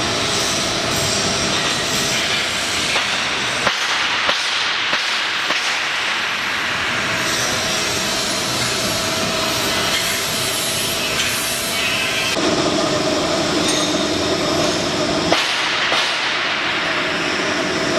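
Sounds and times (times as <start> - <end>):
mixer machine humming: 12.0 - 15.4.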